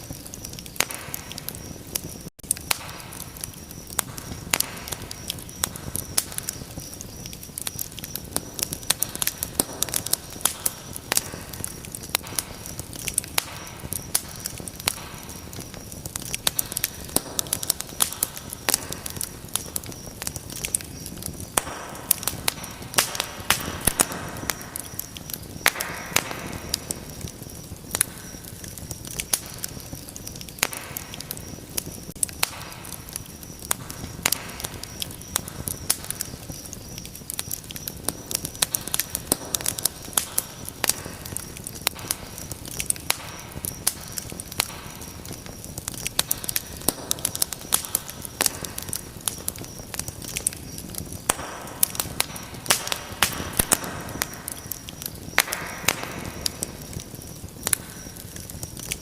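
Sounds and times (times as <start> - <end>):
rushing hiss of flame: 0.0 - 59.0
wood fire crackling and popping: 0.0 - 59.0.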